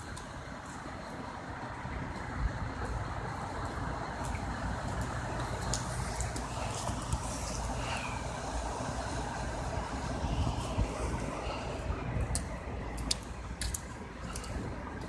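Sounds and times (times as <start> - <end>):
heavy road vehicles rumbling: 0.0 - 15.0.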